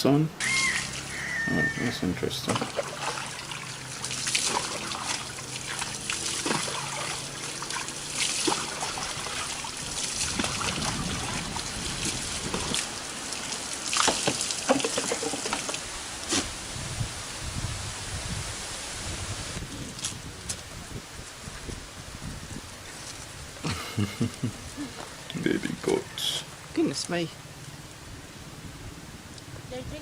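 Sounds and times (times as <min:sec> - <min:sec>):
water pouring and splashing: 0:02.2 - 0:16.6, 0:18.8 - 0:23.6.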